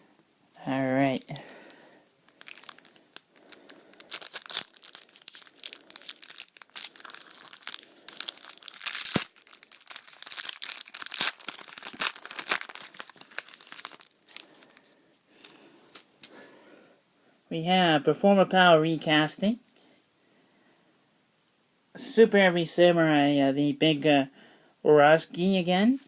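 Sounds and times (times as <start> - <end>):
foil wrapper tearing and crinkling: 2.3 - 14.8.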